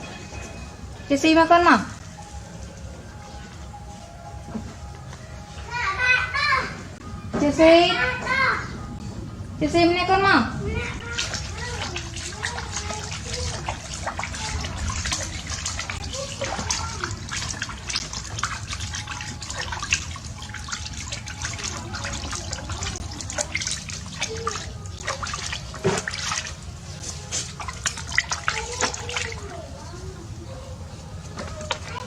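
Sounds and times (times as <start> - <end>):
bathwater splashing: 10.7 - 32.0.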